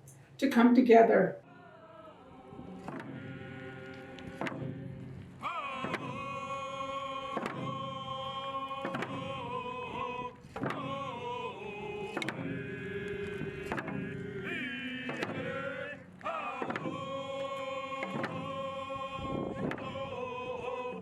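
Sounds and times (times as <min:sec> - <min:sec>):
voices singing slow chant: 0:01.4 - 0:21.0
drum beats: 0:02.4 - 0:20.2.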